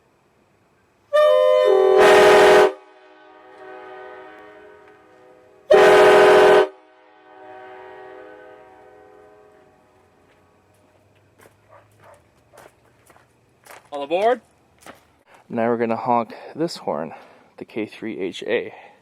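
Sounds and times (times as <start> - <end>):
train air horn blasts: 1.1 - 10.2.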